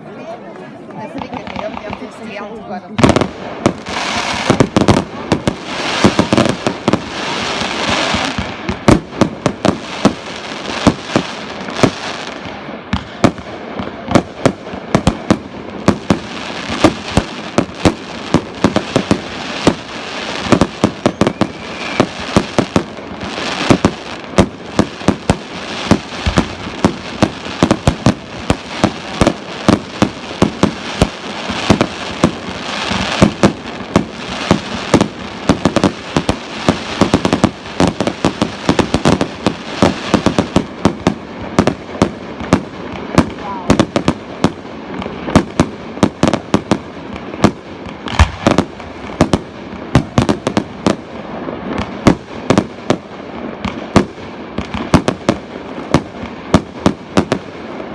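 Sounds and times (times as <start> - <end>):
firework shells bursting: 47.4 - 49.4.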